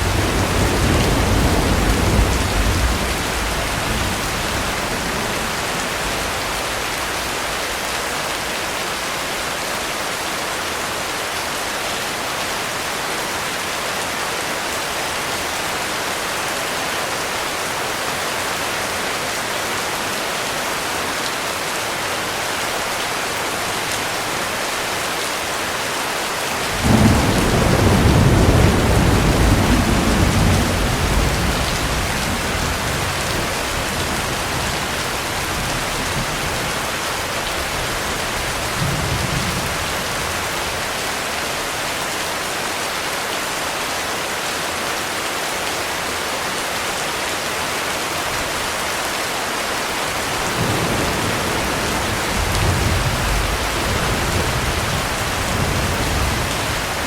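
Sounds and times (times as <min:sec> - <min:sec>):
thunder rumbling: 0:00.0 - 0:07.9, 0:26.6 - 0:41.0, 0:50.2 - 0:57.0
heavy rain: 0:00.0 - 0:57.0.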